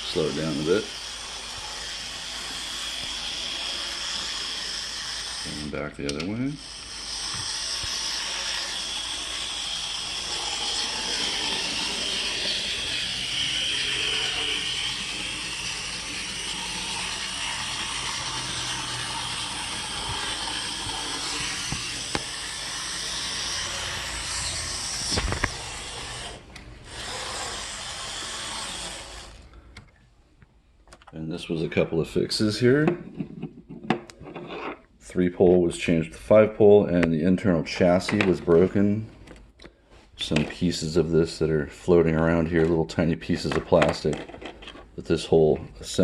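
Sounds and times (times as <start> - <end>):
model train motor whirring: 0.0 - 29.7.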